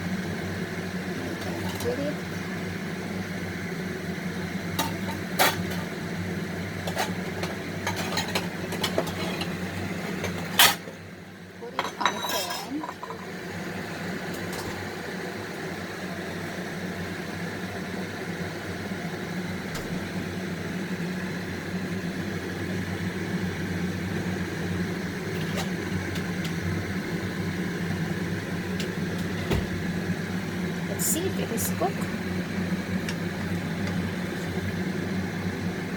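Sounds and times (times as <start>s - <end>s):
low mechanical hum: 0.0s - 35.9s
food frying in butter: 0.1s - 11.0s.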